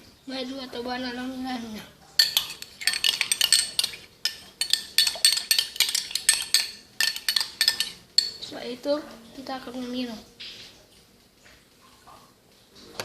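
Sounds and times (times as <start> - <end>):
spoon clinking in a glass: 2.2 - 8.5.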